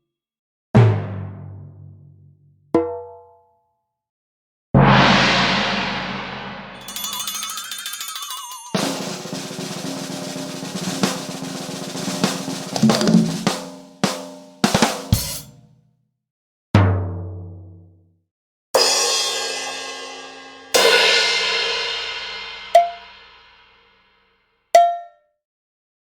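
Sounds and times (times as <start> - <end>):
drum hits: 4.8 - 7.4, 8.8 - 15.6, 20.3 - 23.5
cymbal crashes: 4.8 - 7.5, 8.8 - 12.4, 18.8 - 23.8
pitched metallic strikes: 4.8 - 7.7, 18.9 - 23.7.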